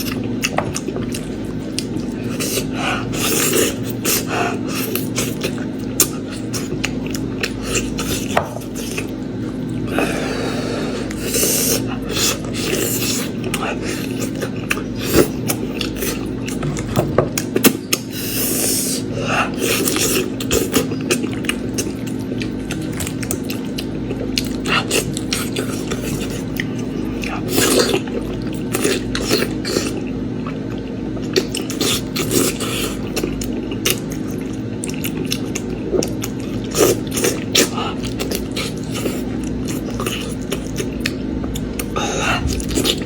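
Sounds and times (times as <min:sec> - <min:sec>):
wet chewing and smacking: 0:00.0 - 0:09.9, 0:11.8 - 0:18.1, 0:19.6 - 0:43.0
low hum: 0:37.6 - 0:43.0.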